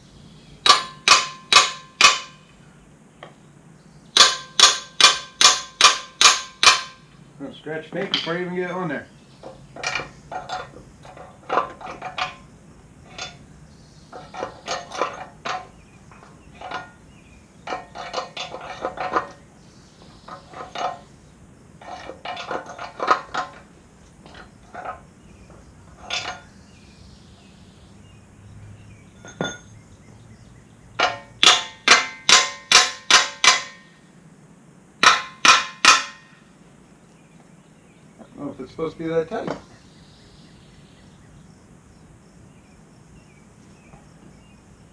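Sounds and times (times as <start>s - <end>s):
hammer striking steel pin: 0.6s - 2.5s, 4.2s - 7.0s, 31.0s - 33.9s, 35.0s - 36.4s.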